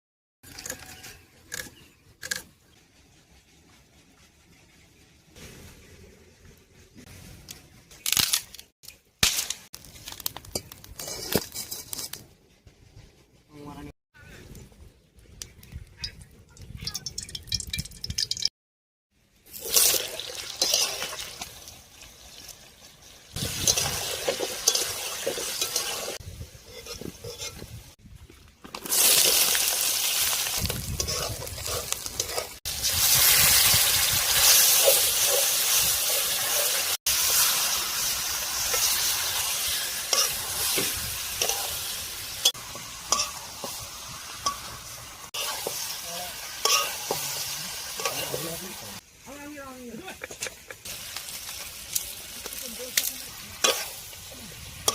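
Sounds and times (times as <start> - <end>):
meat sizzling in a pan: 19.5 - 27.6, 28.8 - 49.1, 50.8 - 54.9
spoon scraping a pan: 20.6 - 21.2, 23.4 - 27.9, 30.9 - 32.6, 38.7 - 43.8, 44.4 - 46.0, 46.6 - 48.6, 53.6 - 54.0.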